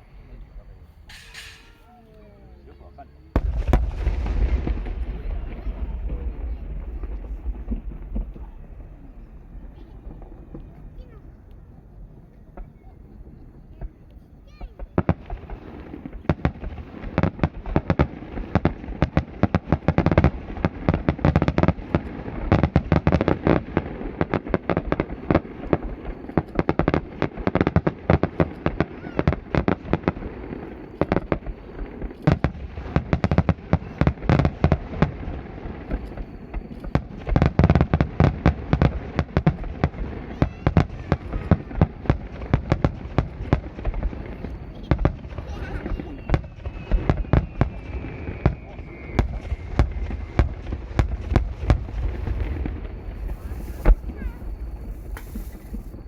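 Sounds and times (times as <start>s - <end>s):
fireworks bangs: 0.0s - 2.0s, 3.3s - 56.0s
deep rumble of shell bursts: 3.4s - 10.8s.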